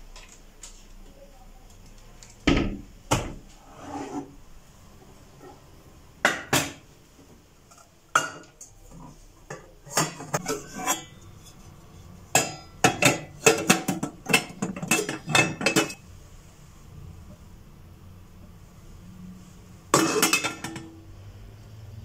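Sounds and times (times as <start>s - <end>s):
dishes and cutlery clattering: 7.6s - 11.6s, 12.3s - 16.0s, 19.9s - 21.0s.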